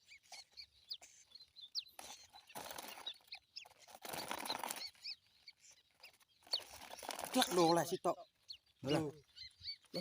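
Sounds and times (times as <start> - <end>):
bird chirps: 0.0 - 10.0
small bird wings flapping: 2.0 - 5.1, 6.0 - 7.7.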